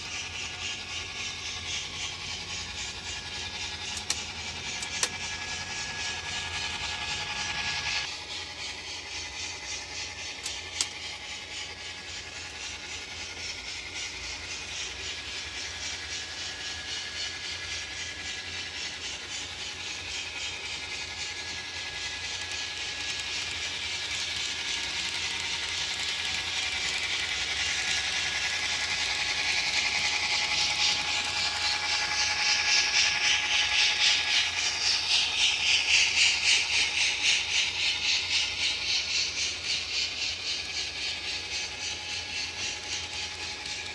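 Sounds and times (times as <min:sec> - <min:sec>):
model locomotive hissing pulse: 0:00.0 - 0:43.9
model locomotive whine: 0:00.0 - 0:43.9.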